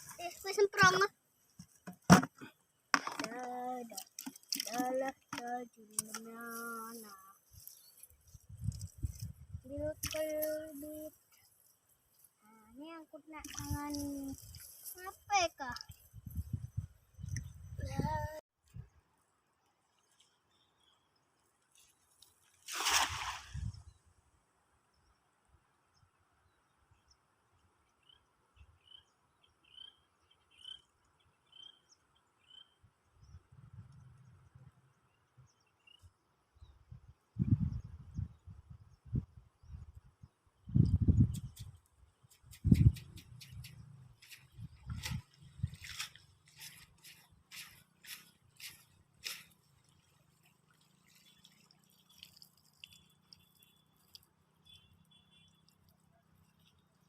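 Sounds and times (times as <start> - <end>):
small bird chirping: 28.0 - 36.8, 40.6 - 57.0.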